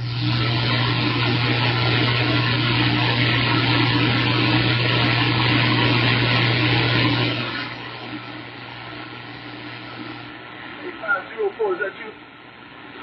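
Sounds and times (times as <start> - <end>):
radio receiver hissing: 0.0 - 13.0
steady low hum: 0.0 - 13.0.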